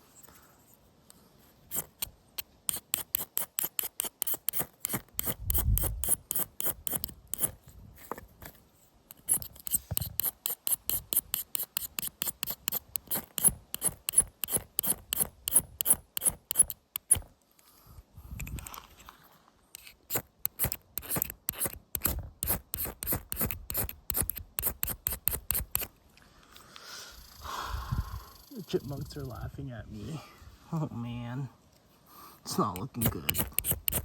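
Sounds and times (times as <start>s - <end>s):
ferro rod scraping: 1.6s - 17.3s, 18.4s - 25.9s, 32.5s - 34.0s.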